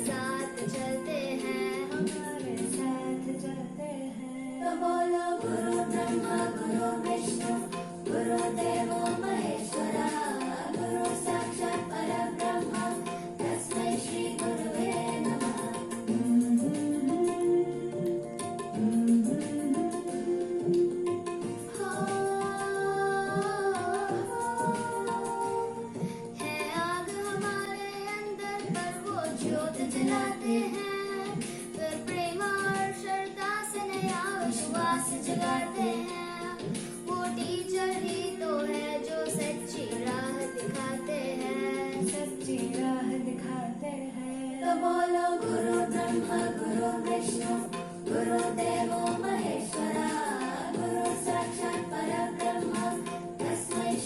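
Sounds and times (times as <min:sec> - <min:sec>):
instrumental music with plucked strings: 0:00.0 - 0:03.9, 0:05.4 - 0:43.8, 0:44.9 - 0:54.0
children singing: 0:04.6 - 0:54.0
higher held notes: 0:05.4 - 0:26.8.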